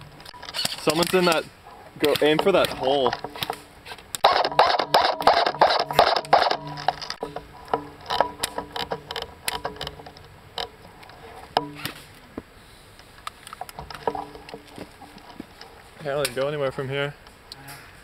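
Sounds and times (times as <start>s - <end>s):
airsoft guns firing: 2.0s - 6.8s.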